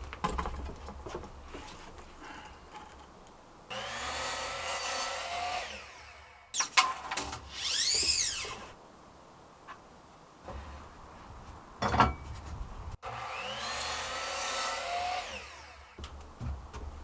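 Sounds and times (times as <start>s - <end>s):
power tool whining: 3.7s - 8.8s.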